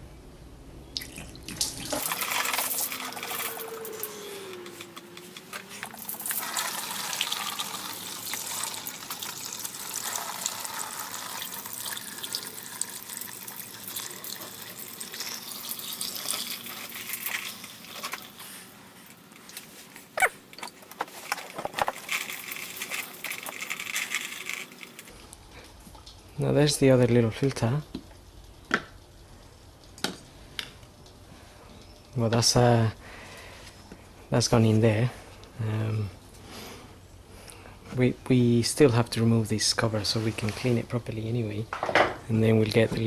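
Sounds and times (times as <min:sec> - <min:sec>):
fluid splashing into container: 0:01.0 - 0:25.1.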